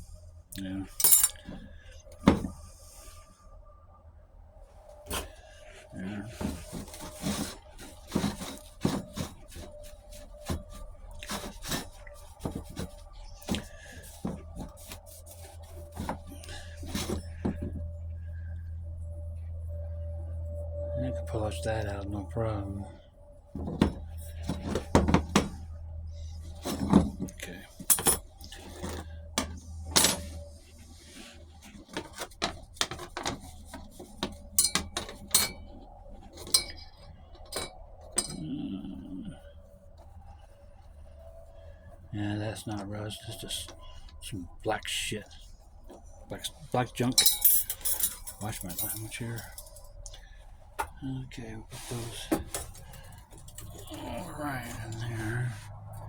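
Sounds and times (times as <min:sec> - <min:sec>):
metal parts clinking on workbench: 0:01.0 - 0:01.6, 0:26.6 - 0:30.3, 0:34.6 - 0:35.7, 0:36.4 - 0:38.4, 0:47.1 - 0:49.8.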